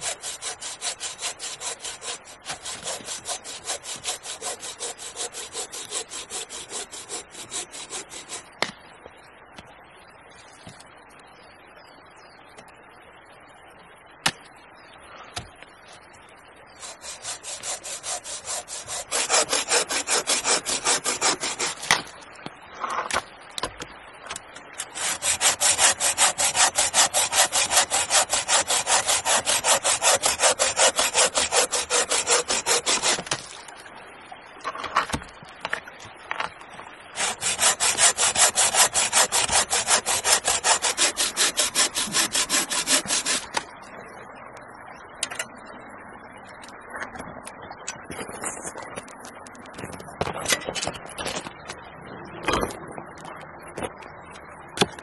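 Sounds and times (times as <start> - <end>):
hand saw cutting log: 0.0 - 8.5, 16.8 - 22.1, 24.8 - 33.6, 37.2 - 43.6.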